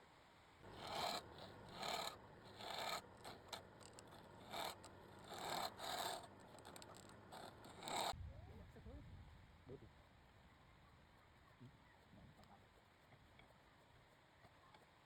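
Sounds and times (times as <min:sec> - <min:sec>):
abrasive rasping over surface: 0:00.7 - 0:08.1.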